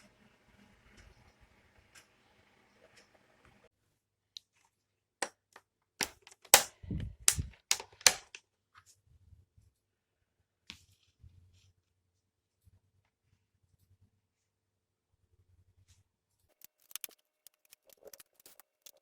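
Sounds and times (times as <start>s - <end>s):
hard objects clicking and knocking: 6.0s - 8.4s.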